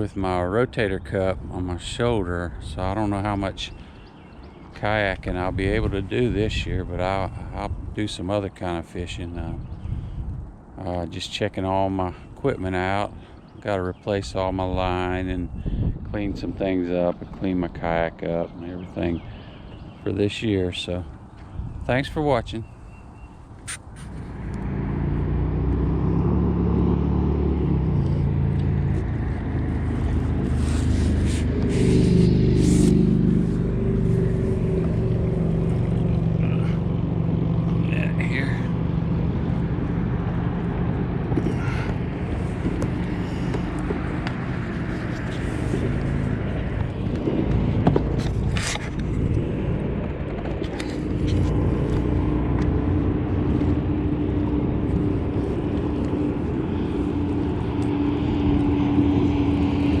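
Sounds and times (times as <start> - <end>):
motor engine running: 24.2 - 60.0
short hissing noises: 30.5 - 33.0.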